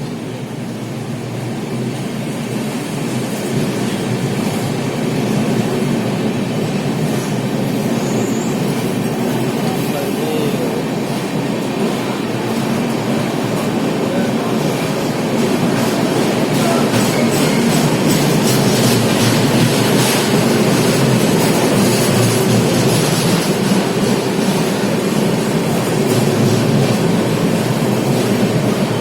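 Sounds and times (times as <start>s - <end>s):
train rumbling on track: 0.0s - 29.0s
wheels clicking over rail joints: 1.7s - 29.0s.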